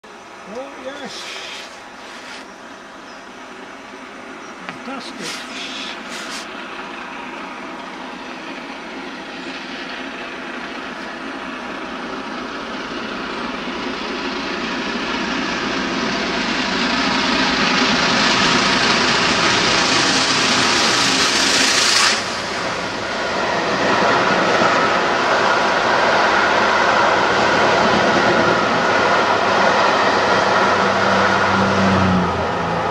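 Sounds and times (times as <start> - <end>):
steam locomotive hissing: 0.5 - 2.5, 4.8 - 24.4.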